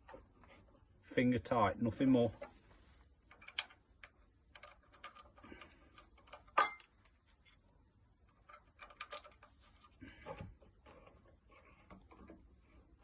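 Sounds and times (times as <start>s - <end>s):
sharp metallic clink: 6.6s - 7.0s.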